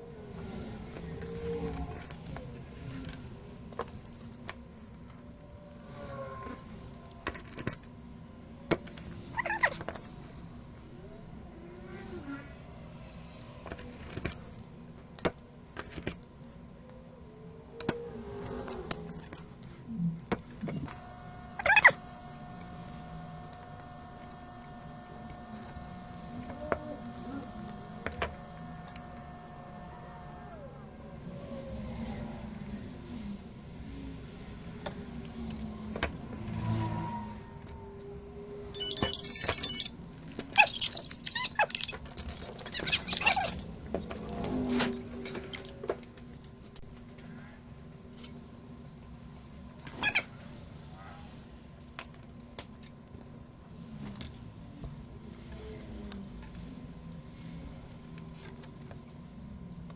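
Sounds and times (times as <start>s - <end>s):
faint hum: 0.0s - 59.9s
small hand tools clicking and rattling: 38.8s - 44.3s.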